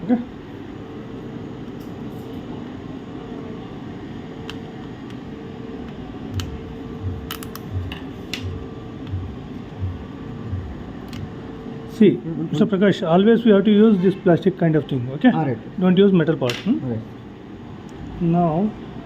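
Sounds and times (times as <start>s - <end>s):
steady hum with faint tone: 0.0s - 19.0s
soft low thumps: 6.4s - 10.9s.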